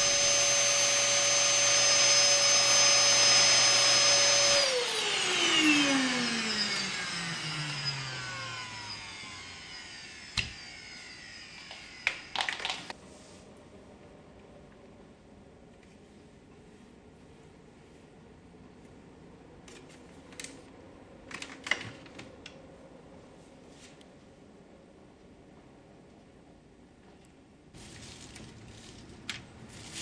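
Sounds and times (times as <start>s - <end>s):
electric motor whine: 0.0s - 12.9s.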